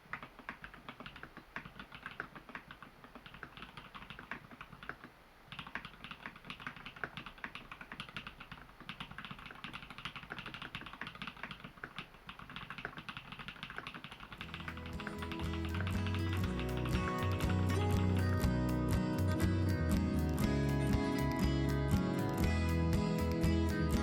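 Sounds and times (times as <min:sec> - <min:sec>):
mechanical keyboard typing: 0:00.0 - 0:18.4.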